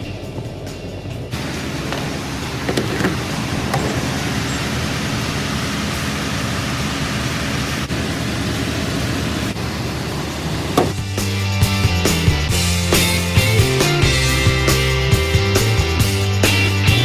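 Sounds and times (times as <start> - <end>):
low engine hum: 0.0 - 17.0
road and wind noise: 0.0 - 17.0
rock music: 10.9 - 17.0.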